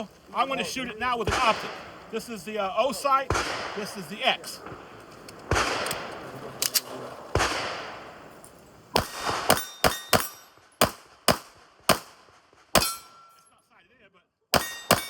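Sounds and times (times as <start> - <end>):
pistol shots: 1.2 - 2.2, 3.2 - 8.3, 8.9 - 13.2, 14.5 - 15.0.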